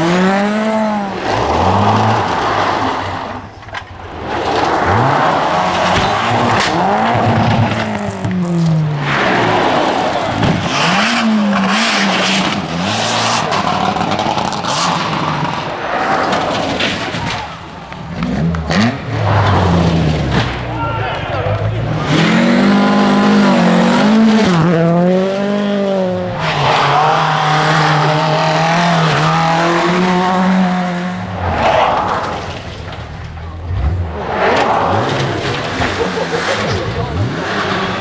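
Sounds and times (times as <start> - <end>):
rally car engines revving: 0.0 - 38.0
tyres on gravel: 31.2 - 38.0.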